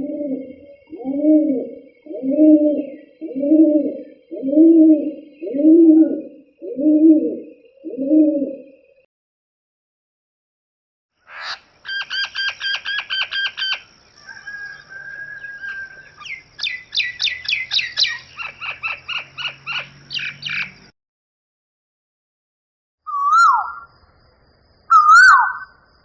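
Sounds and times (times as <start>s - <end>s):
bird calls: 0.0s - 8.9s, 11.2s - 20.9s, 23.1s - 24.2s, 24.8s - 25.9s.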